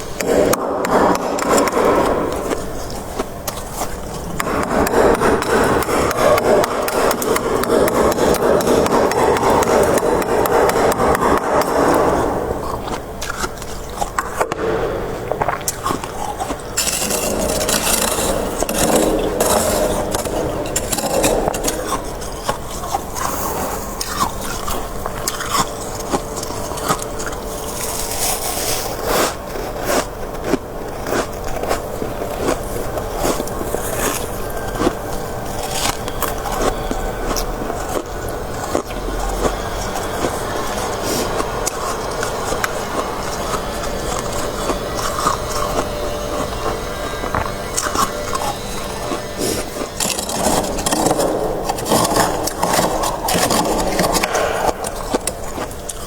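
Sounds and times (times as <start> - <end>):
frost being scraped: 15.6 - 56.0.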